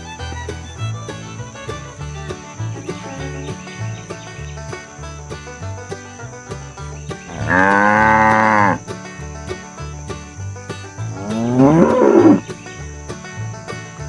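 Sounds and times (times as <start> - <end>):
background music: 0.0 - 14.0
cow mooing: 7.3 - 8.8, 11.1 - 12.4.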